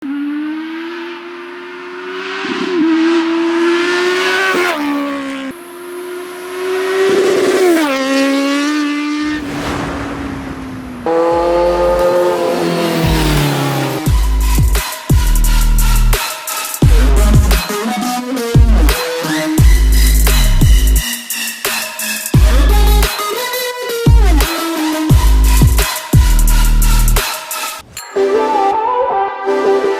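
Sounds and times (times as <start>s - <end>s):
motorcycle engine accelerating hard: 0.0s - 15.3s.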